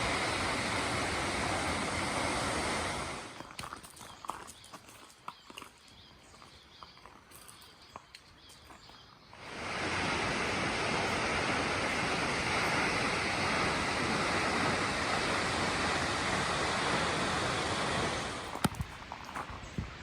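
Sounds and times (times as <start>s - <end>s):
waterfall rushing: 0.0s - 3.4s, 9.4s - 18.8s.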